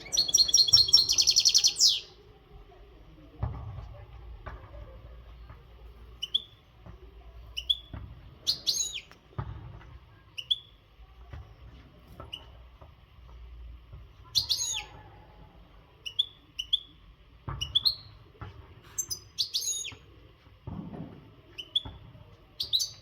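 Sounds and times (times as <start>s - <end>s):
goldfinch chirping and twittering: 0.0s - 2.1s.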